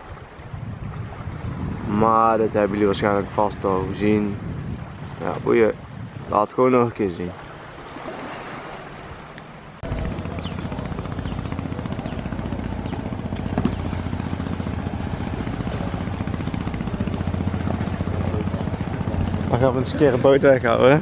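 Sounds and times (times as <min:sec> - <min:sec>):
engine running with pulsing beat: 0:09.8 - 0:21.0.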